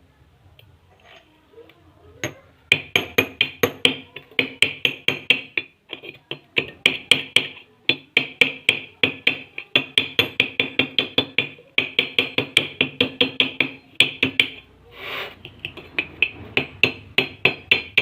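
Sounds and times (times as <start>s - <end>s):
rapid hammer tapping on metal: 2.2s - 14.6s, 15.4s - 18.0s
short hiss: 14.9s - 15.4s.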